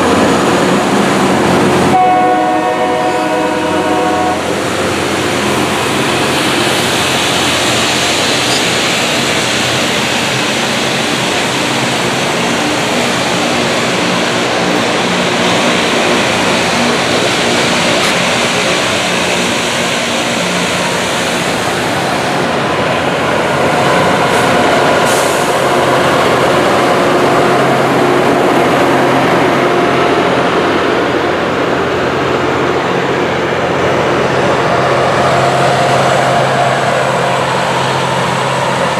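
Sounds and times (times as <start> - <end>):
rail grinder grinding hiss: 4.5 - 22.4, 24.2 - 26.6.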